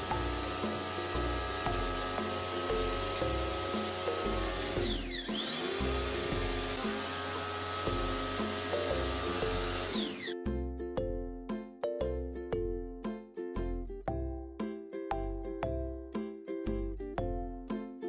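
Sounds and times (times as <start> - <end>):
electric motor whining: 0.0 - 10.4
background music: 0.0 - 18.0.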